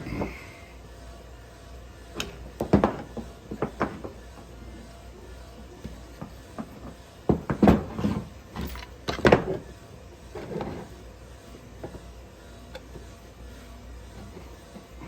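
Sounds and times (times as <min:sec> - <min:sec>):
parts knocking and clattering: 0:02.2 - 0:04.2, 0:05.8 - 0:09.6.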